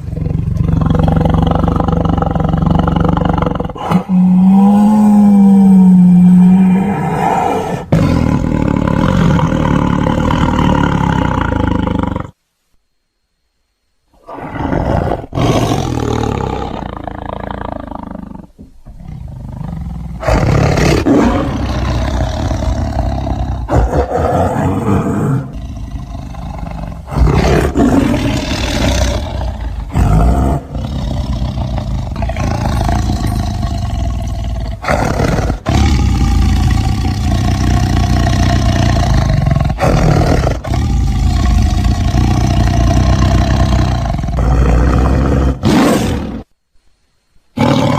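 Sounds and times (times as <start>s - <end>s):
tiger roaring: 0.0s - 12.4s, 14.2s - 46.5s, 47.6s - 47.9s.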